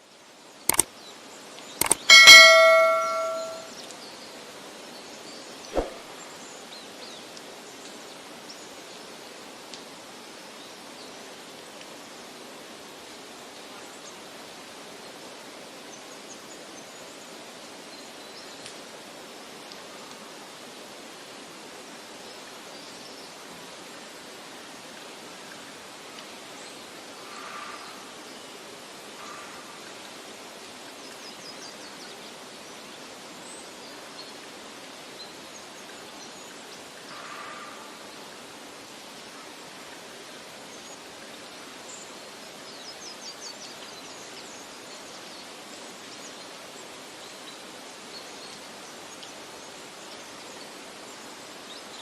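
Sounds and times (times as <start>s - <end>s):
faint high chirps: 1.8s - 3.7s.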